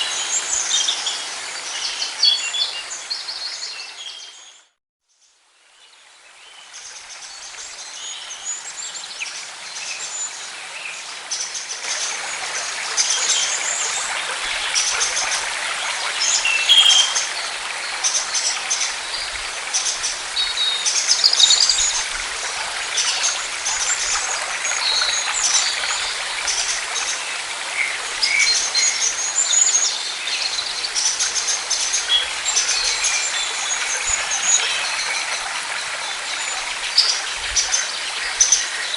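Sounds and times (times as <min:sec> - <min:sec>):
birds chirping and calling: 0:16.5 - 0:17.3.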